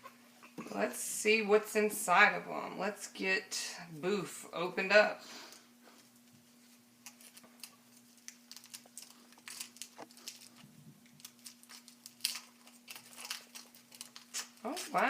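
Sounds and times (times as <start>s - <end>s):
faint steady hum: 0.0s - 15.0s
foil crinkling and tearing: 7.0s - 15.0s.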